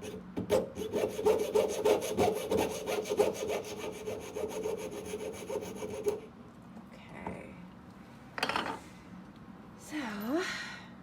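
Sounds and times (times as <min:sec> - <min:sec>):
saw cutting metal tube: 0:00.0 - 0:06.2.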